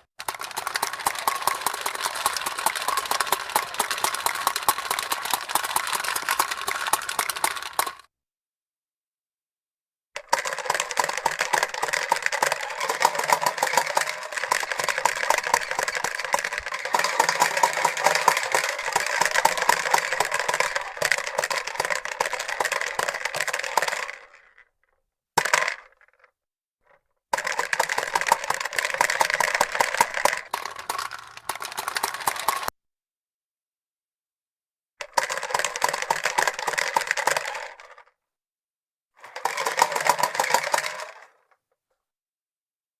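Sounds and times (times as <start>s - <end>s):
plastic balls popping in toy dome: 10.3s - 24.3s.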